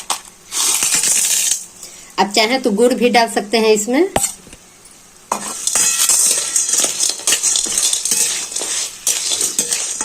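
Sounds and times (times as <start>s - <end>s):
ghee sizzling: 0.0s - 3.4s, 5.1s - 10.0s
spoon stirring and scraping: 5.3s - 10.0s.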